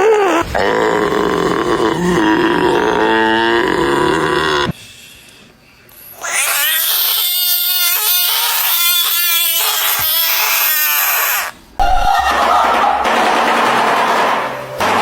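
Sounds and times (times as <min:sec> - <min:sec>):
animal wailing cries: 0:00.0 - 0:04.7, 0:06.1 - 0:11.6.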